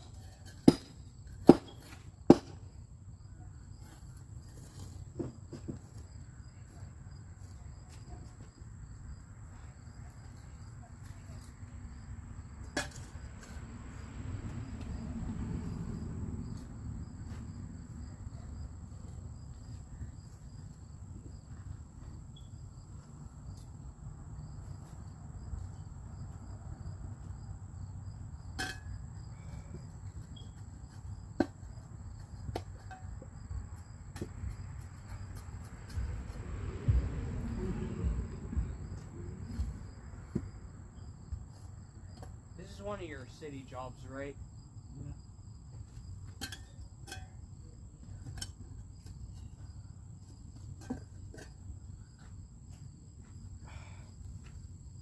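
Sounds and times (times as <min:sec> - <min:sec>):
low outdoor rumble: 0:11.0 - 0:52.5.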